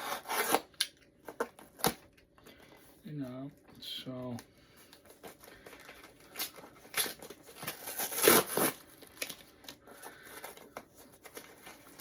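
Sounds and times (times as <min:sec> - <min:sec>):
packing tape ripping: 0:00.0 - 0:00.9, 0:06.3 - 0:09.4.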